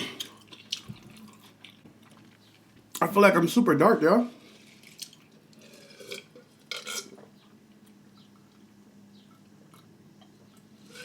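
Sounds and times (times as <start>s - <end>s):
short burp: 0.0s - 0.3s
faint steady hum: 0.0s - 11.0s.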